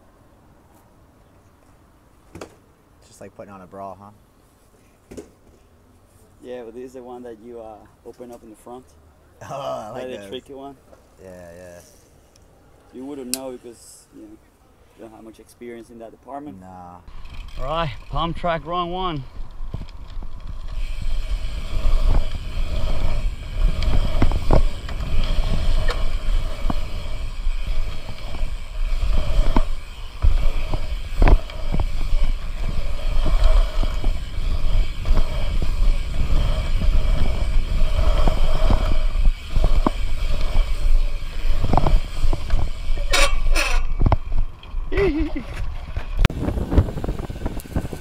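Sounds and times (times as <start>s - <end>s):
bike tyres rumbling: 17.1s - 48.0s
wind rushing over microphone: 18.9s - 48.0s
bike knocks and clicks: 41.3s - 46.3s.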